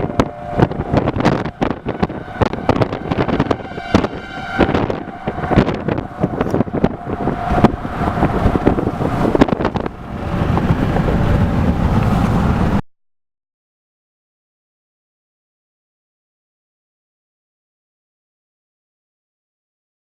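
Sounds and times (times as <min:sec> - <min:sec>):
faint tornado siren tone: 0:00.0 - 0:12.8
wind buffeting microphone: 0:00.0 - 0:12.8.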